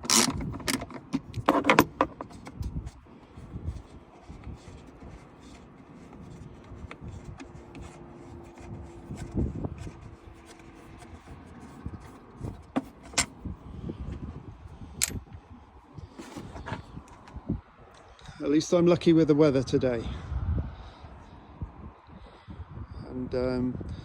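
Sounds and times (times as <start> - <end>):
hand tools clicking and knocking: 0.0 - 2.7.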